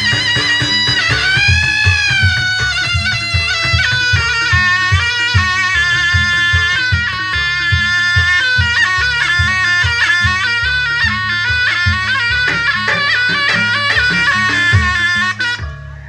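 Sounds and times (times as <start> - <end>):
low gong beats: 0.0 - 5.5
drum strokes: 0.0 - 10.5, 11.9 - 15.4
reedy wind instrument melody: 0.0 - 16.0.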